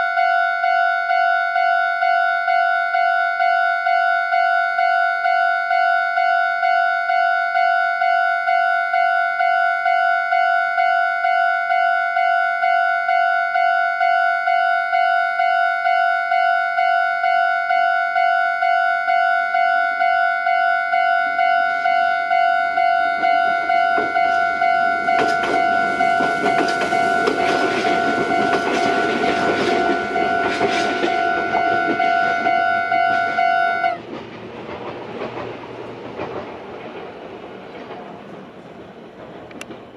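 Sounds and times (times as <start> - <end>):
level crossing warning bell: 0.0 - 34.1
train wheels clattering over rails: 23.2 - 39.9.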